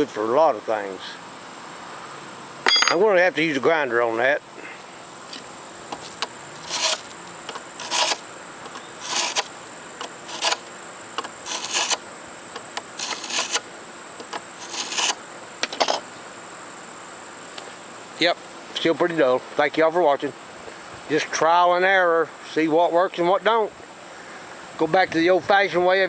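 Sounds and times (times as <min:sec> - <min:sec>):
hand sharpener rasping on metal blade: 0:06.6 - 0:07.1, 0:07.8 - 0:08.2, 0:09.0 - 0:09.5, 0:10.3 - 0:10.6, 0:11.4 - 0:12.0, 0:13.0 - 0:13.6, 0:14.6 - 0:15.2.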